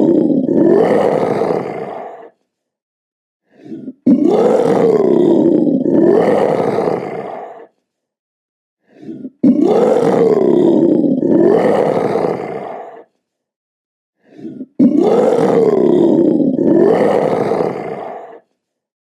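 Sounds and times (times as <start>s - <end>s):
leopard roaring: 0.0s - 2.4s, 3.7s - 7.7s, 9.4s - 13.0s, 14.8s - 18.4s.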